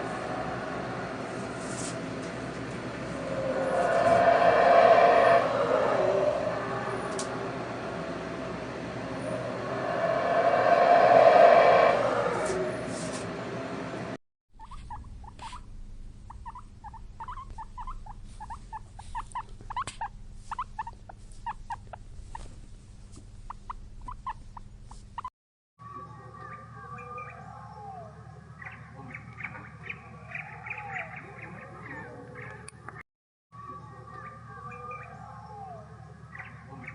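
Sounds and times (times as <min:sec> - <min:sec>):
rapid high animal squeaks: 0:14.6 - 0:15.7, 0:16.3 - 0:22.4
animal chirps and whistled calls: 0:33.9 - 0:36.9.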